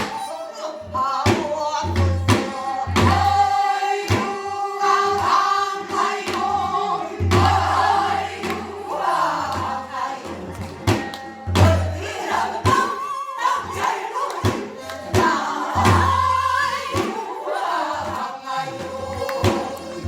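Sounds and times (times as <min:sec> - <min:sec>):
voices singing folk song: 0:00.0 - 0:20.0
sharp drum strikes: 0:01.3 - 0:04.5, 0:05.9 - 0:13.0, 0:13.7 - 0:17.2, 0:19.4 - 0:20.0.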